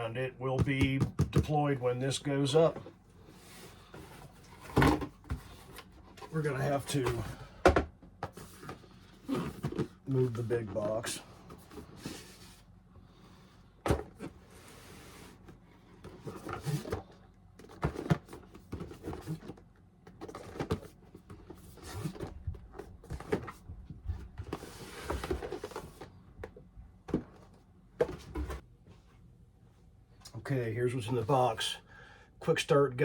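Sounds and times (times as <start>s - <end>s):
cardboard box rustling and scraping: 24.4s - 26.1s.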